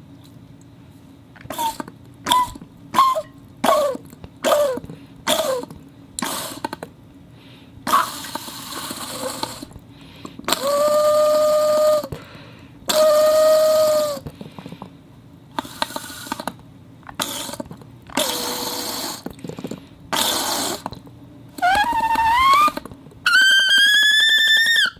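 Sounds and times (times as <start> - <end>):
whistle squeaks sliding down: 1.6 - 3.3, 21.6 - 24.9
long steady whistled tones: 1.6 - 3.4, 10.5 - 12.2, 12.9 - 14.2, 21.6 - 24.9.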